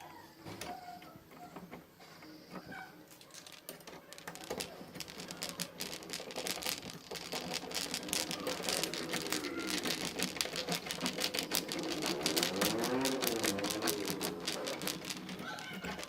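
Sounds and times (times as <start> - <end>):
rising and falling pitched sound: 11.4 - 15.3.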